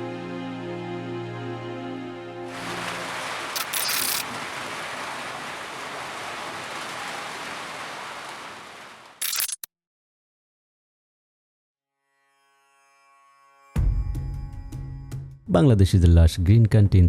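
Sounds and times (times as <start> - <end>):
heavy rain pouring: 2.5 - 9.2
crackling bursts: 2.5 - 9.7.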